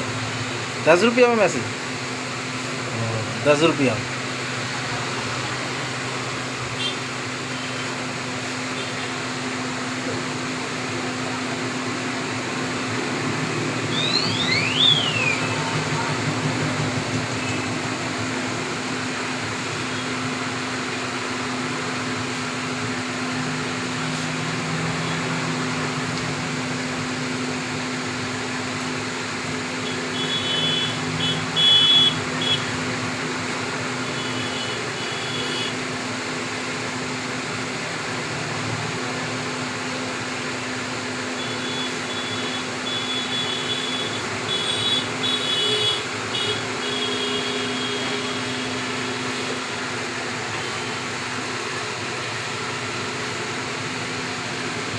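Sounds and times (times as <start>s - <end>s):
high electronic beeping: 13.8s - 15.8s
high gliding whistle: 13.9s - 15.8s.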